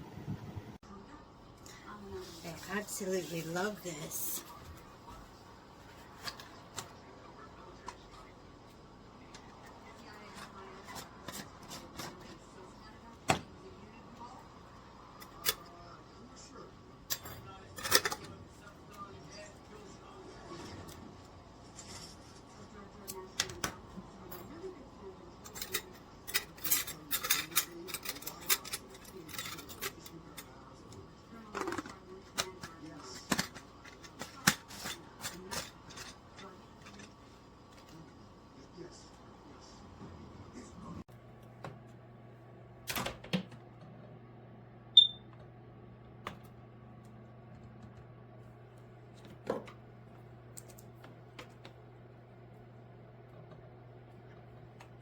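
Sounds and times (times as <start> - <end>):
kettle electronic beep: 44.9 - 45.3.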